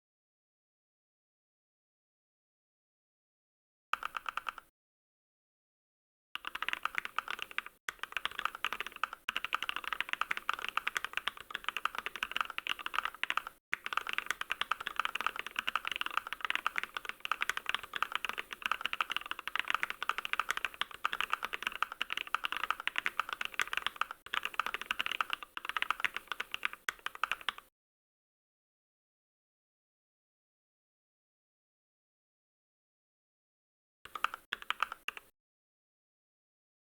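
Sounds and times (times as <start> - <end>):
typing on computer keyboard: 4.0 - 4.7, 6.4 - 27.7, 34.1 - 35.3.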